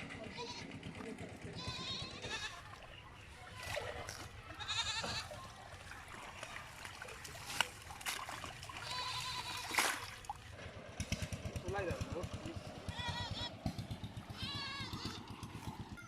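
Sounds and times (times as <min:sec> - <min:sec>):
animal bleating: 0:00.2 - 0:00.8, 0:01.6 - 0:02.7, 0:04.5 - 0:05.3, 0:08.8 - 0:09.8, 0:12.8 - 0:13.6, 0:14.3 - 0:15.3
water splashing: 0:02.5 - 0:10.6.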